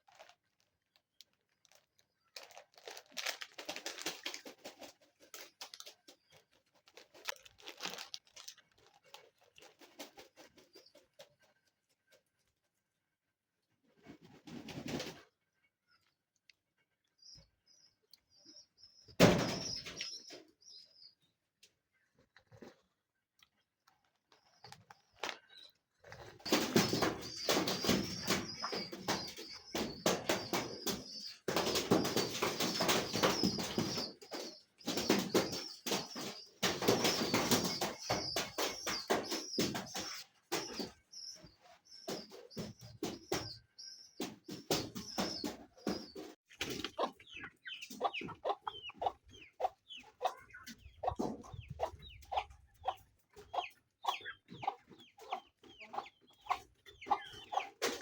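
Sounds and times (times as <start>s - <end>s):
chickens clucking: 26.0s - 58.0s.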